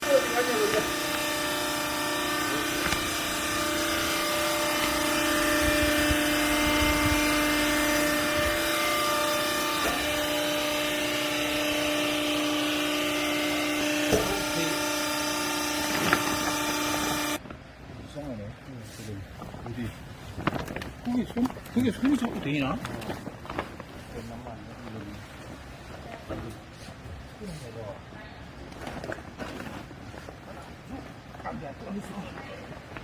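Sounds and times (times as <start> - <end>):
electric motor and hydraulic pump humming: 0.0 - 17.5.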